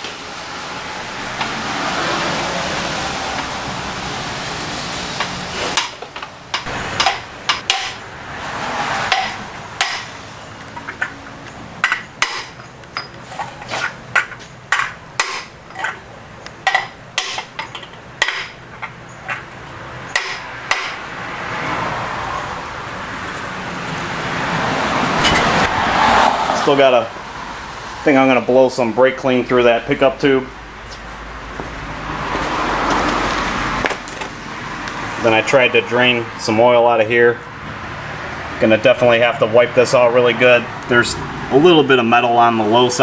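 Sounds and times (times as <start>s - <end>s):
metal tools clanking: 9.1s - 21.0s, 25.2s - 25.7s.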